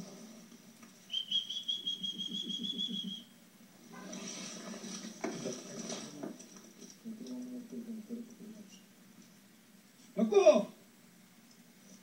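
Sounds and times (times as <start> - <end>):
high warbling whistle: 1.1 - 3.3
rustling noise: 3.8 - 7.2.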